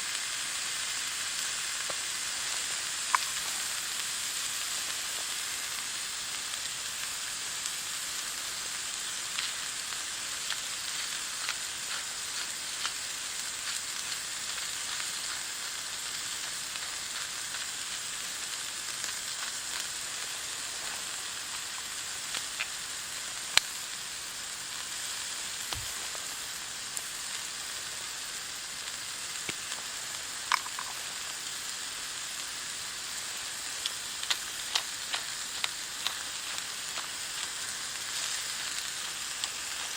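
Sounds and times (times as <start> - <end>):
food sizzling in a pan: 0.0 - 39.9.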